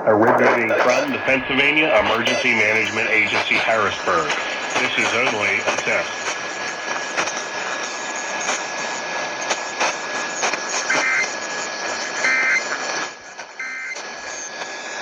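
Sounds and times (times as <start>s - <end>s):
radio hiss and crackle: 0.0s - 15.0s
buzzy data bursts: 0.3s - 7.0s.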